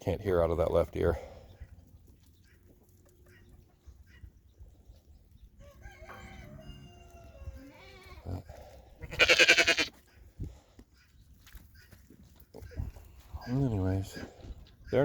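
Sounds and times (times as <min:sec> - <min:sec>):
rooster crowing: 0:05.6 - 0:07.6
sheep bleating: 0:09.0 - 0:09.9.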